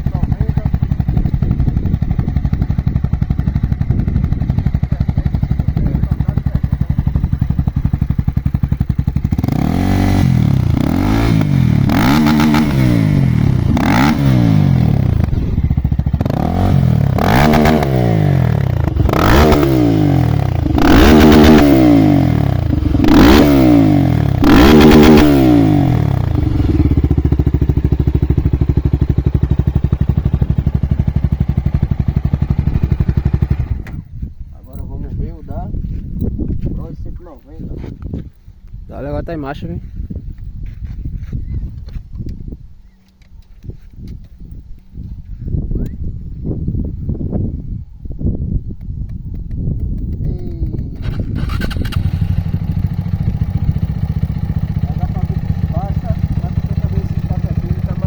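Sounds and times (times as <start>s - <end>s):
motorcycle engine revving hard: 0.0s - 34.0s, 50.8s - 58.0s
motorcycle engine idling: 0.0s - 38.7s, 49.1s - 58.0s.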